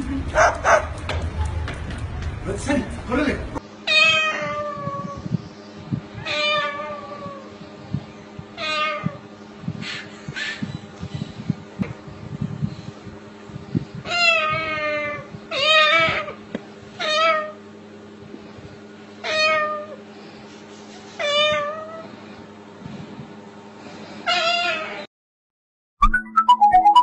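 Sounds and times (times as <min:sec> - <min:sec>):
cat meowing: 0:03.9 - 0:05.3, 0:06.2 - 0:07.5, 0:08.6 - 0:09.2, 0:14.0 - 0:16.4, 0:17.0 - 0:17.6, 0:19.2 - 0:20.0, 0:21.2 - 0:22.1, 0:24.3 - 0:25.1.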